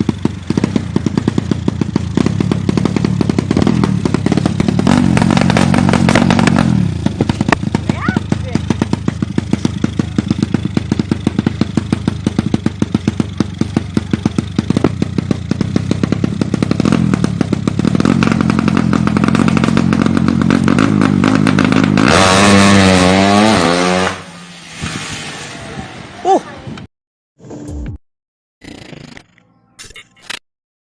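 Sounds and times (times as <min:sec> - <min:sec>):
motorcycle engine revving: 0:00.0 - 0:24.6.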